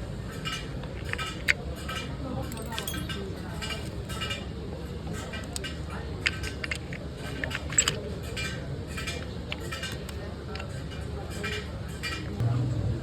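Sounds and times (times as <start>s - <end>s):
sharp metallic clicks: 2.5s - 4.0s.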